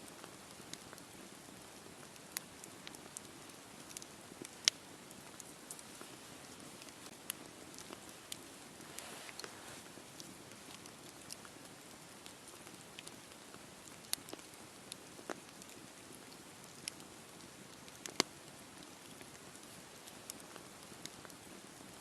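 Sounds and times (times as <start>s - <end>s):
wood crackling and popping: 0.0s - 22.0s
fire hissing: 5.7s - 11.2s.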